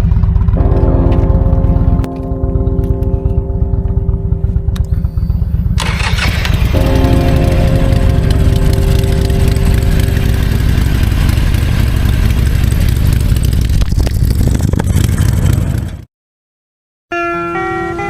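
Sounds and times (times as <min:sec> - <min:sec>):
motorcycle engine rumble: 0:00.0 - 0:16.1
guitar music: 0:00.6 - 0:13.0, 0:17.1 - 0:18.0.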